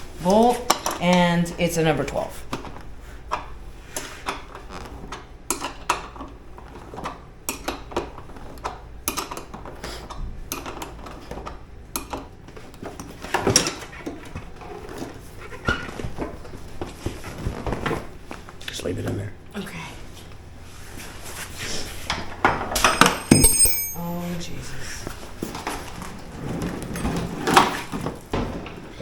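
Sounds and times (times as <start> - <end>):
wrench clinking on bolt: 22.8 - 24.2.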